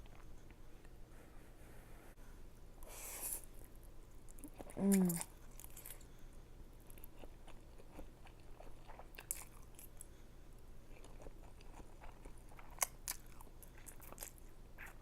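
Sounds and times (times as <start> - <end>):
chewing noodles: 6.8 - 10.1, 10.9 - 15.0.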